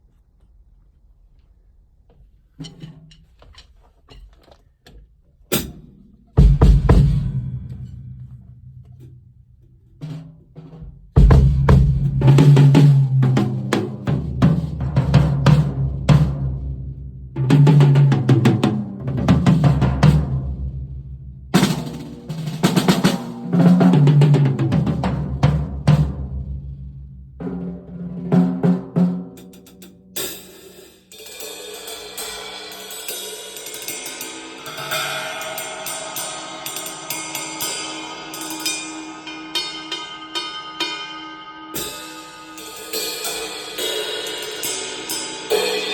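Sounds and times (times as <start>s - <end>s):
drum hits: 5.5s - 20.9s
drum kit playing: 5.5s - 45.9s
bass drum hits: 6.4s - 9.3s, 11.2s - 12.9s
cymbals: 29.4s - 45.9s.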